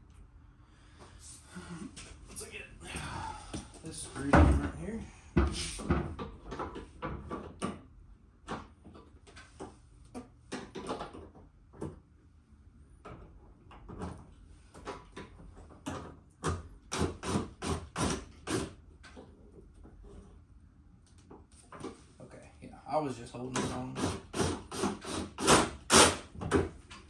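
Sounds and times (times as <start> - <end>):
plastic parts clicking and knocking: 8.4 - 12.0.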